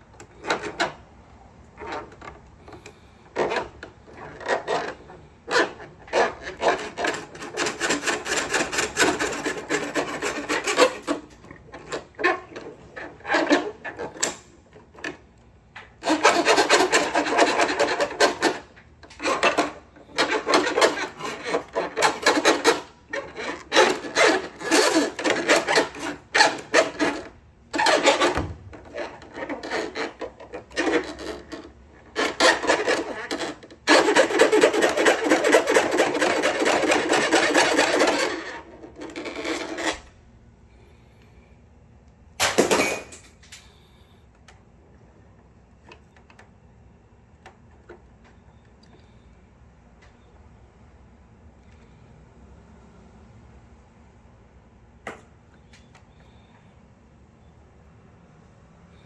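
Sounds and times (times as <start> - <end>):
rasping rubbing strokes: 1.8 - 14.4, 16.0 - 40.1.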